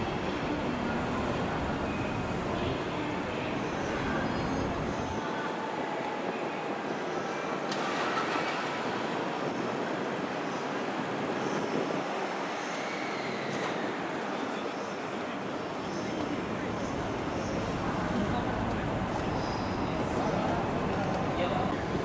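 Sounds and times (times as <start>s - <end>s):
train running: 0.0s - 6.4s, 15.3s - 22.0s.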